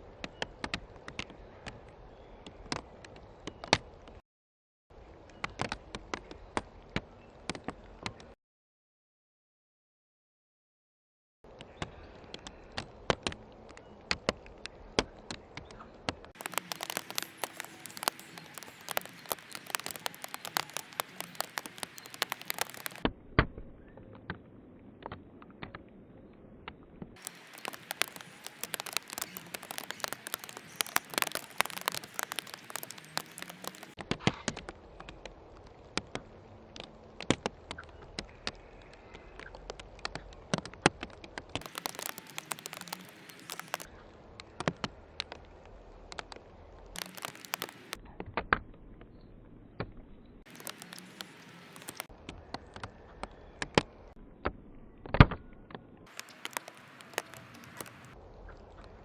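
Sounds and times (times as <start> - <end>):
sharp clicks and ticks: 16.3 - 23.1, 27.2 - 35.3, 36.0 - 43.9, 46.1 - 48.6, 50.4 - 53.9, 56.0 - 58.2.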